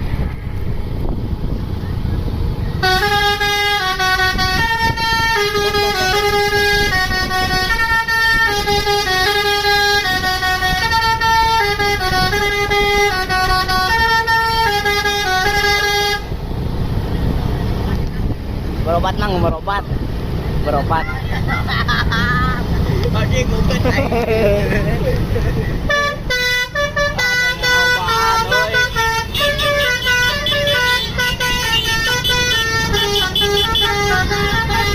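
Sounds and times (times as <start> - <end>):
bus musical horn playing tune: 2.8 - 16.4, 25.8 - 34.9.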